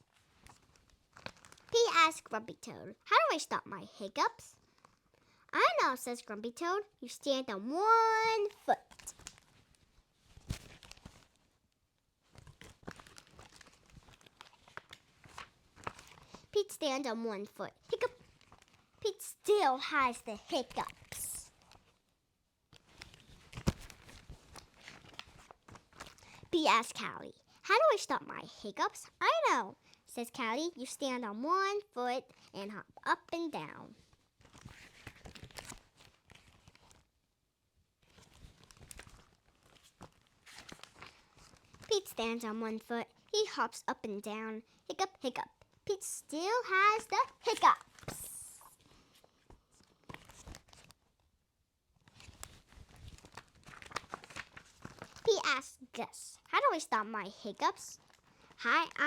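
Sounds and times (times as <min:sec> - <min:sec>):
book pages rustling: 0:00.0 - 0:02.3, 0:04.6 - 0:05.5, 0:07.9 - 0:27.0, 0:32.3 - 0:37.2, 0:38.0 - 0:43.6, 0:45.5 - 0:51.3, 0:52.0 - 0:55.4, 0:56.4 - 0:59.0.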